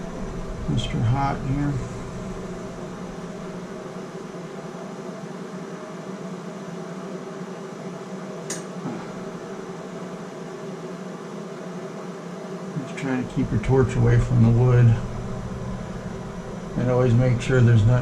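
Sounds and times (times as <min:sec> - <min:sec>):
gas torch hissing: 0:00.0 - 0:04.4, 0:13.0 - 0:18.0.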